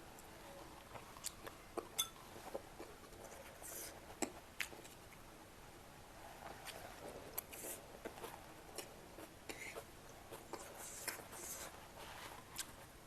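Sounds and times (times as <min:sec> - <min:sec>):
person chewing: 0:06.6 - 0:11.7.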